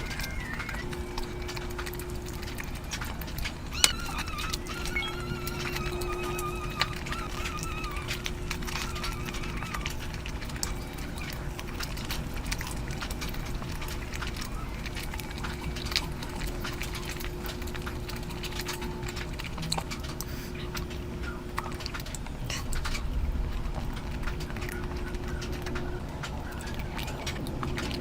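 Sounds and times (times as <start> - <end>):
faint hum: 0.0 - 28.0
wet chewing sounds: 0.0 - 28.0.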